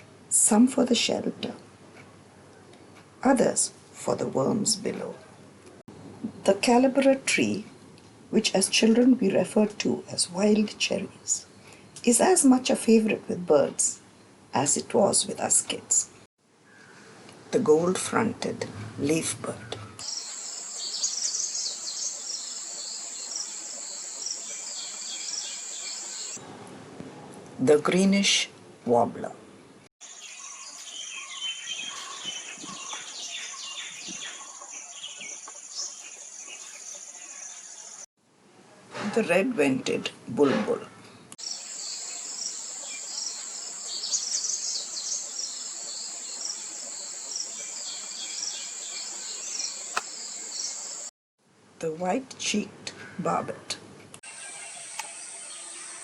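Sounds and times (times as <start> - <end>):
birds chirping: 19.4 - 26.4, 30.0 - 38.1, 41.0 - 51.1.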